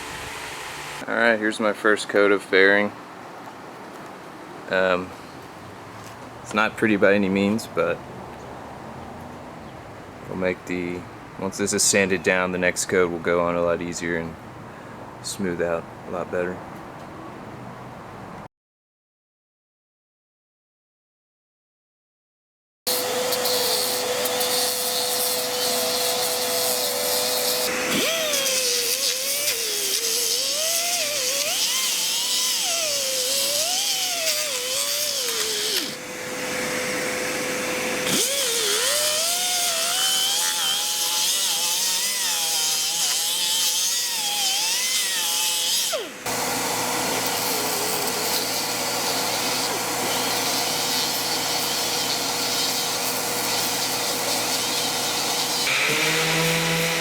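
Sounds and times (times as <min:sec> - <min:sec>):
electric power sander whining: 0:22.9 - 0:57.0.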